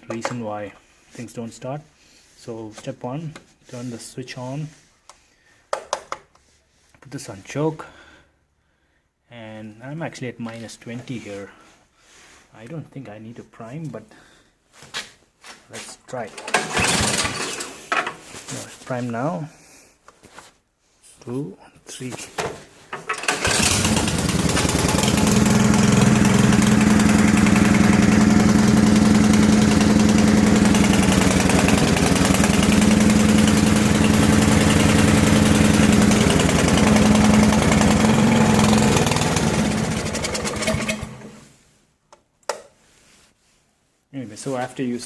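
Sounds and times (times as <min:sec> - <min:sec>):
small engine starting and running: 0:16.4 - 0:17.9, 0:23.0 - 0:41.4.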